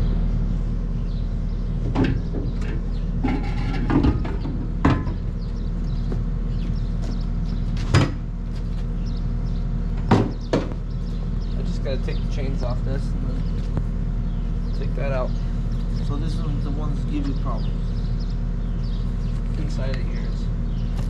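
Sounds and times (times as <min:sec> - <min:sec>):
engine drone: 0:00.0 - 0:21.0
knocks and clanks: 0:01.8 - 0:06.3, 0:07.1 - 0:08.3, 0:10.0 - 0:10.8.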